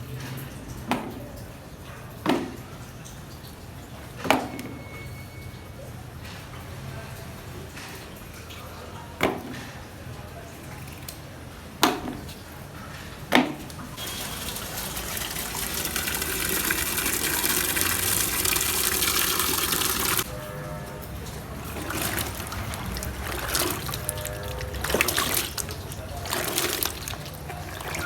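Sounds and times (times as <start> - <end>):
water pouring into a pot: 14.0 - 20.4, 21.0 - 28.0.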